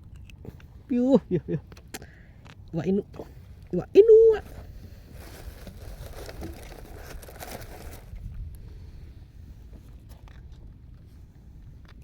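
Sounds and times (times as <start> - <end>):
wind buffeting microphone: 4.4 - 11.8.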